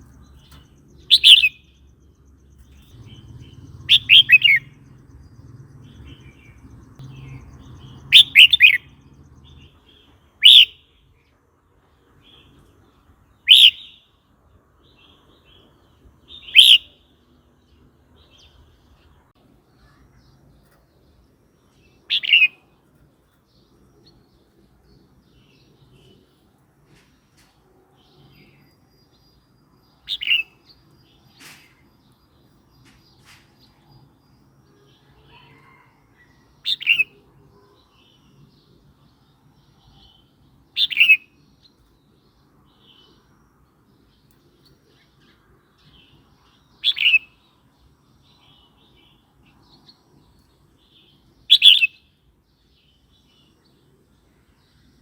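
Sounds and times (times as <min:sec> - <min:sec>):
bird singing whistled phrases: 0:01.1 - 0:01.7, 0:03.9 - 0:04.7, 0:08.1 - 0:08.9, 0:10.4 - 0:10.8, 0:13.5 - 0:14.0, 0:16.4 - 0:17.0, 0:40.8 - 0:41.3, 0:51.5 - 0:52.0.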